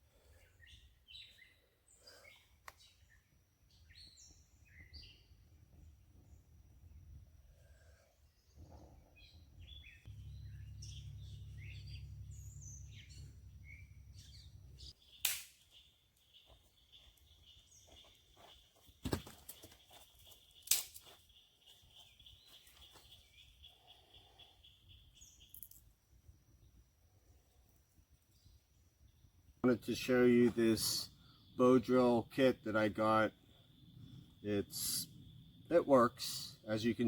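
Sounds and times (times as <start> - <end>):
birds chirping: 0.2 - 7.2, 8.0 - 25.9, 28.3 - 37.0
low rumble: 10.1 - 14.9.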